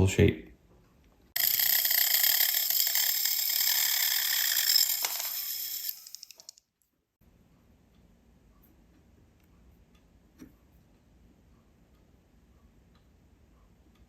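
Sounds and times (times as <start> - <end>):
rotary tool cutting wire: 1.4 - 6.6.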